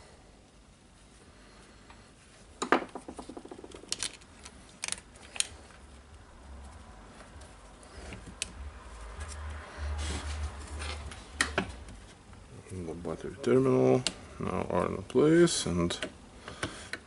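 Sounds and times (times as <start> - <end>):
sharp clicks of small parts: 3.7 - 5.6.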